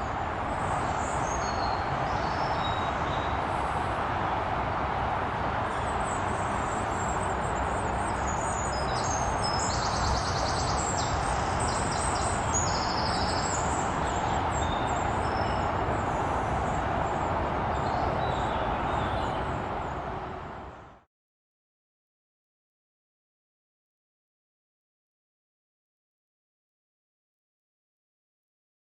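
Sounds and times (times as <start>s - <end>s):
birds chirping and trilling: 8.0s - 16.2s.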